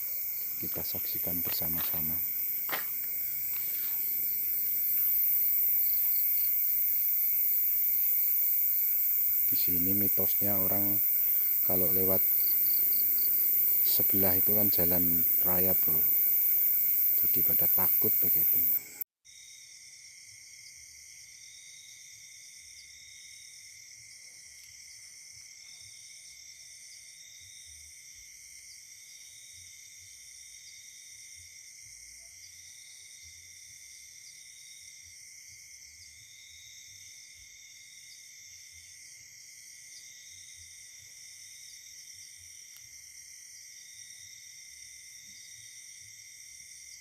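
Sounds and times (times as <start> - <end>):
crickets and insects trilling: 0.0 - 19.5.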